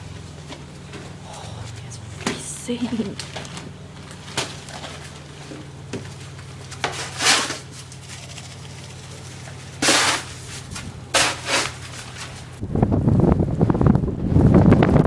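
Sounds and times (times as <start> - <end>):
hissing wind gusts: 0.0 - 15.0
steady low hum: 0.0 - 15.0
wind buffeting microphone: 7.8 - 15.0.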